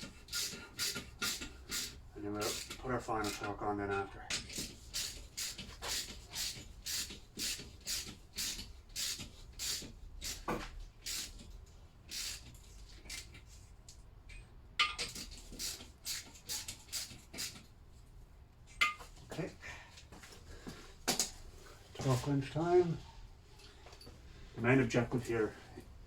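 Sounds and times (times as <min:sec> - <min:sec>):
hand ratchet clicking: 0:00.0 - 0:13.4, 0:14.9 - 0:17.7.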